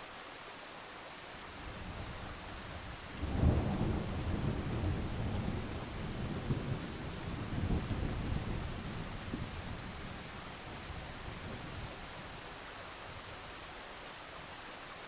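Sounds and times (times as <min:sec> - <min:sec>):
steady rain: 0:00.0 - 0:15.0
thunder rumbling: 0:03.2 - 0:10.2.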